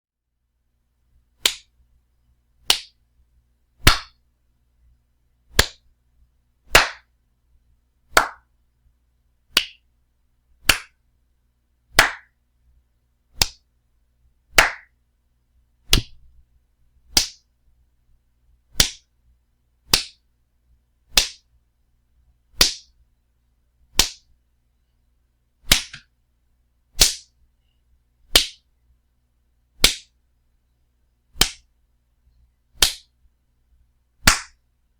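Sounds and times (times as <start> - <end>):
loud wet slaps: 15.9 - 16.2, 18.8 - 19.0, 25.7 - 26.0, 34.3 - 34.6.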